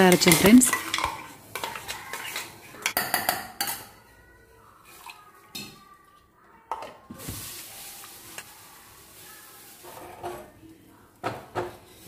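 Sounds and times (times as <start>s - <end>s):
spoon knocking metal vessels: 0.0s - 3.9s.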